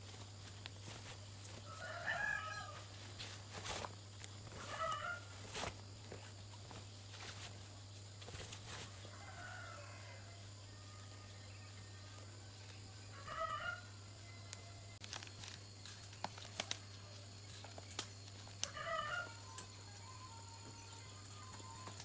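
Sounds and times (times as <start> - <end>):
chickens clucking: 0.7 - 6.8.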